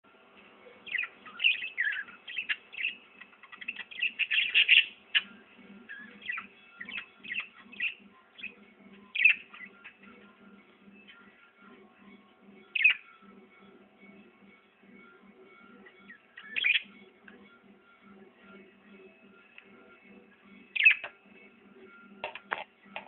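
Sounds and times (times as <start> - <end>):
small bird chirping: 0.8 - 10.3, 12.7 - 13.2, 15.9 - 17.1, 20.7 - 21.2.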